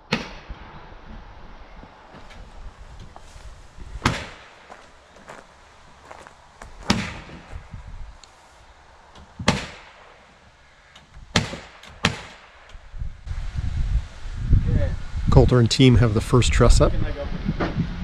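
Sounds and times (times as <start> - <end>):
loud knocks on wood frame: 4.0 - 4.4, 6.8 - 7.5, 9.4 - 9.9, 11.3 - 12.4.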